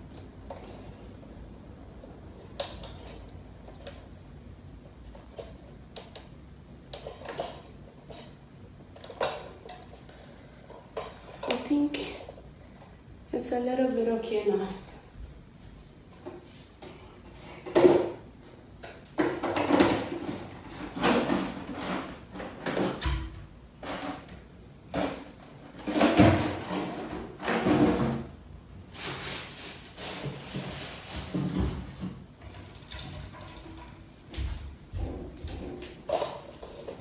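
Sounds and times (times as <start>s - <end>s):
stand parts knocking and rattling: 32.4s - 37.0s.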